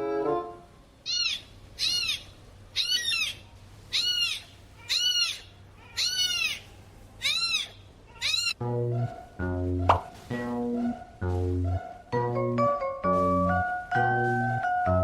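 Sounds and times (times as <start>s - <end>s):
animal calling in high calls: 1.0s - 9.3s.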